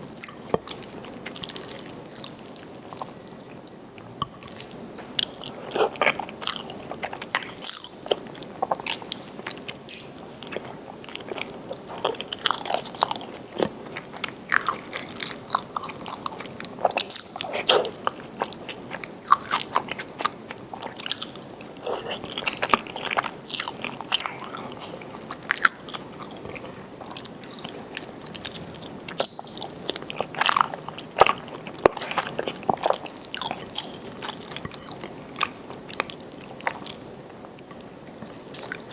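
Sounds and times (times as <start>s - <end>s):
person chewing crunchy food: 0.0s - 38.9s.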